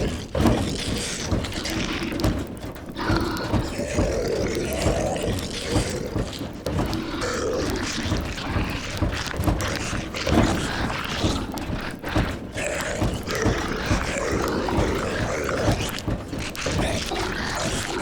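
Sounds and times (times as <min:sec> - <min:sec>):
knocks and thumps: 0:00.0 - 0:18.0
zombie voices moaning and grunting: 0:00.0 - 0:18.0.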